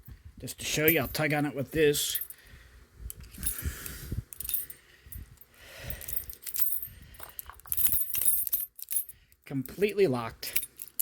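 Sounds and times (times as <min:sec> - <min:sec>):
keys jangling: 0:04.3 - 0:09.2
padlock rattling: 0:04.3 - 0:09.2.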